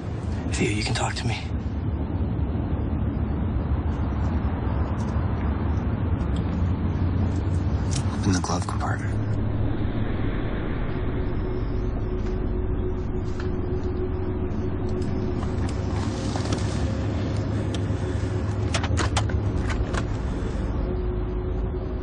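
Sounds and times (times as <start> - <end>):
car cabin rumble: 6.0 - 22.0.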